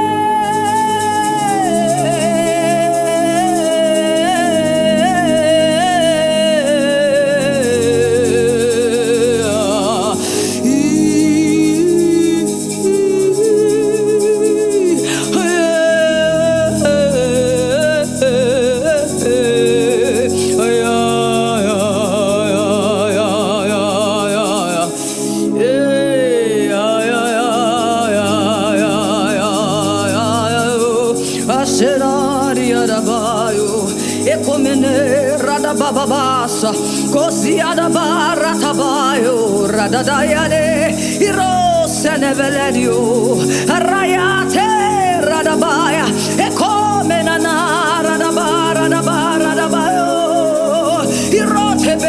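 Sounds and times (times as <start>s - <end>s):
person singing with vibrato: 0.0s - 52.0s
sustained keyboard pad: 0.0s - 52.0s.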